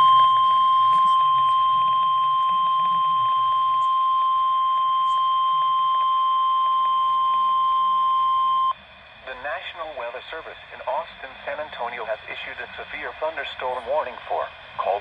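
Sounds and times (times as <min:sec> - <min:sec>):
steady alarm tone: 0:00.0 - 0:08.8.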